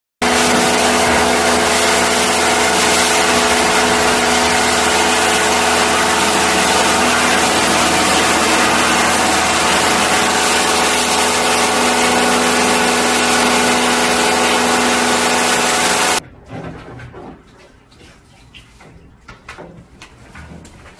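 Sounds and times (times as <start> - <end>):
machine hiss: 0.2 - 16.2
machine hum: 0.2 - 16.2.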